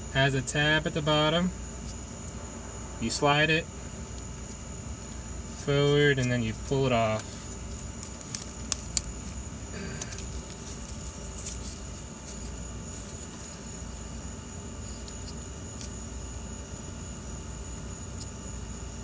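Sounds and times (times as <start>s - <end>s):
steady low hum: 0.0s - 19.0s
plastic connector clicks and scrapes: 7.1s - 9.4s.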